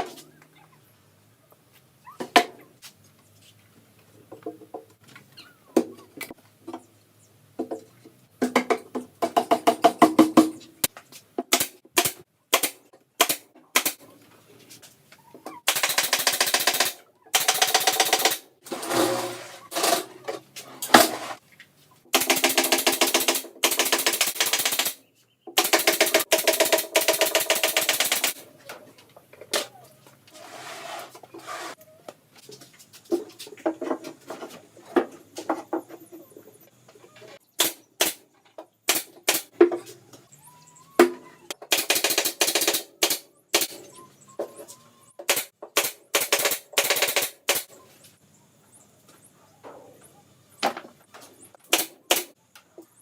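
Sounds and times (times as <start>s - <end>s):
power driver hammering screws: 15.7s - 20.1s, 22.2s - 24.9s, 25.6s - 28.4s.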